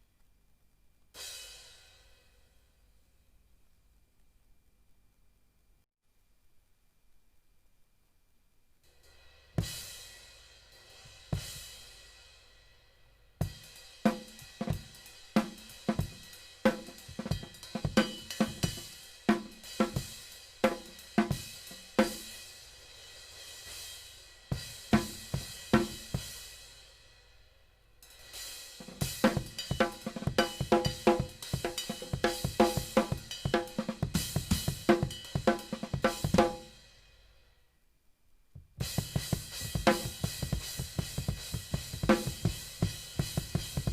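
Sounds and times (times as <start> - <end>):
snare drum: 13.4 - 22.3, 24.6 - 26.2, 28.8 - 36.7, 38.8 - 43.9
bass drum: 29.0 - 36.6, 38.5 - 43.9.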